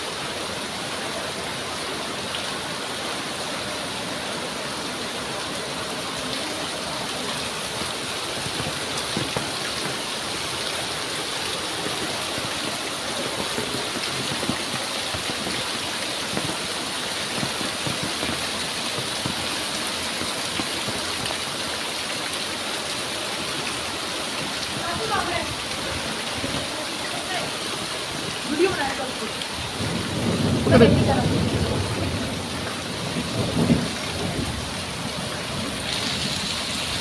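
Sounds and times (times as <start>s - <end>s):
heavy rain hissing: 0.0s - 37.0s
loud raindrop hits: 7.4s - 21.6s, 24.4s - 37.0s.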